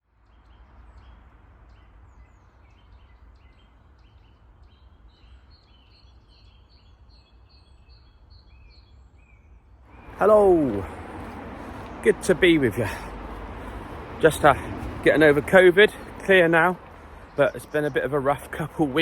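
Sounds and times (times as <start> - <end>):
birds singing: 0.0 - 19.0
distant road traffic rumble: 9.8 - 19.0.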